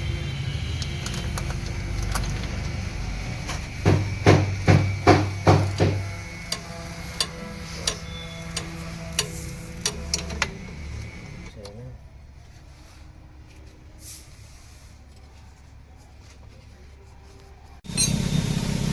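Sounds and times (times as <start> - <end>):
hammer blows: 3.4 - 10.6.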